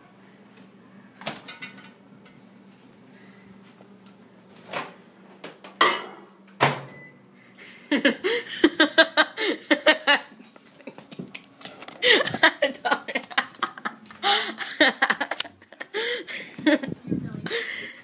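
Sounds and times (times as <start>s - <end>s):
faint steady hum: 0.0s - 18.0s
kitchen knocks and clatters: 1.2s - 2.4s, 5.7s - 7.0s.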